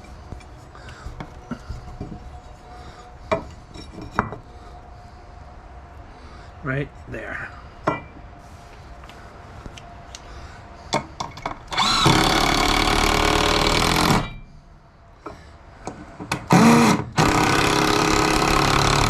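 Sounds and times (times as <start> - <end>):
cordless drill driving screws: 11.7 - 14.2, 16.5 - 19.0.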